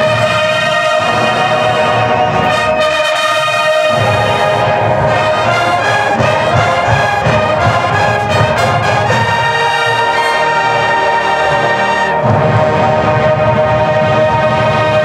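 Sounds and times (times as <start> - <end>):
brass marching bands playing: 0.0 - 15.0
steady low drum beat: 3.9 - 13.7.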